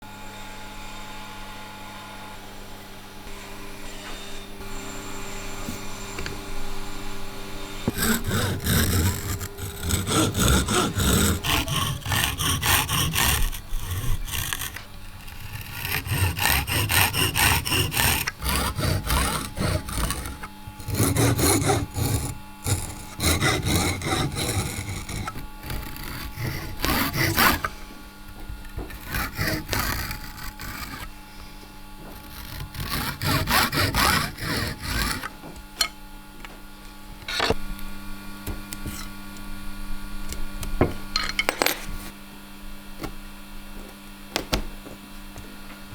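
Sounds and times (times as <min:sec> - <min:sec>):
electrical hum: 0:04.5 - 0:45.9
hand saw on wood: 0:07.8 - 0:35.4.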